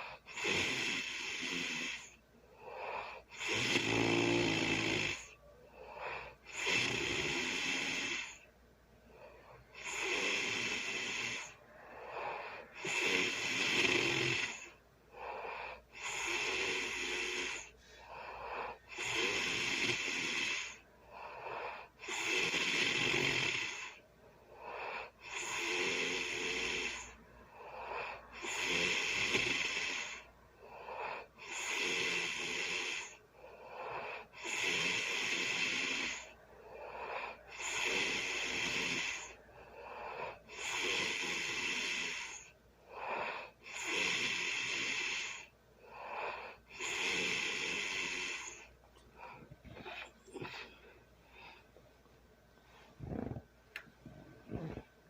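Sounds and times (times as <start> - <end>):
person snoring: 0.0 - 8.5, 9.2 - 24.0, 24.6 - 51.6, 52.8 - 53.5, 54.4 - 54.9.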